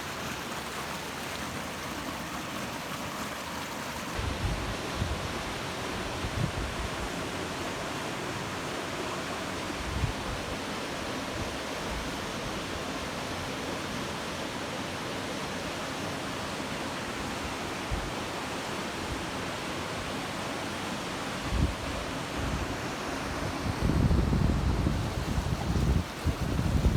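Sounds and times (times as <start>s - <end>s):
falling water rushing: 0.0s - 6.2s, 12.6s - 26.9s
wind thumps on microphone: 23.5s - 26.9s.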